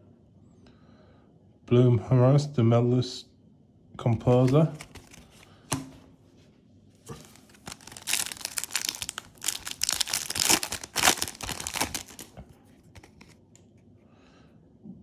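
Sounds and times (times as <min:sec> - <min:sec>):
foil wrapper crinkling and tearing: 0:04.2 - 0:05.5, 0:07.1 - 0:13.4.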